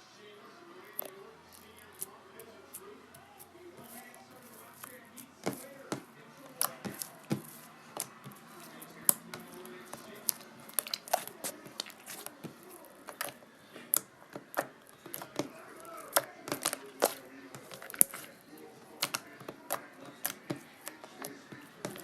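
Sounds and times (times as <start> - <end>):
slime clicking and popping: 3.4 - 18.3, 18.9 - 22.0.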